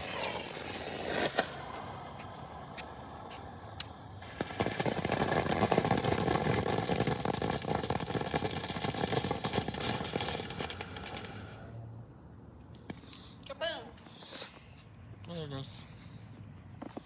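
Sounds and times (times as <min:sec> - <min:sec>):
firework hiss: 0:00.0 - 0:02.0, 0:02.8 - 0:11.7
firework crackling: 0:00.0 - 0:11.7.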